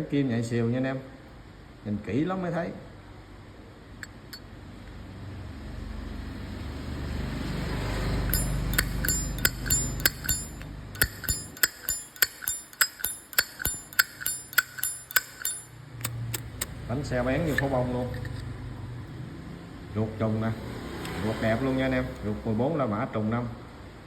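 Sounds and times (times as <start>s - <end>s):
lighter metallic clicks: 8.3s - 16.8s.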